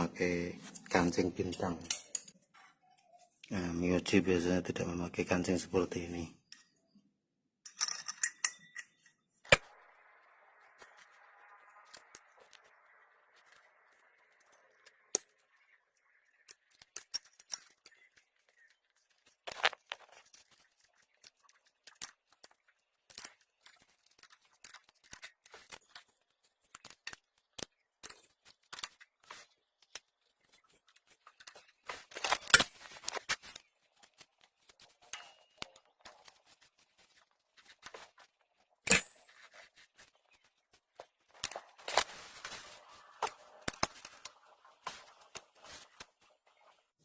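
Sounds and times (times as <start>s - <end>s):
small metallic clicks and clinks: 1.8s - 2.5s, 7.6s - 9.3s, 34.9s - 36.5s
metal parts clattering: 7.7s - 9.0s
sharp metal clank ringing: 38.9s - 39.3s.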